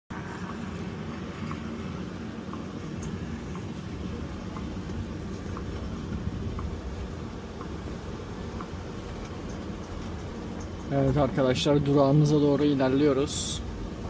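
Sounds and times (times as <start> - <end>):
vehicle engine and road rumble: 0.1 - 14.0
faint tick: 4.5 - 6.8, 7.6 - 7.8.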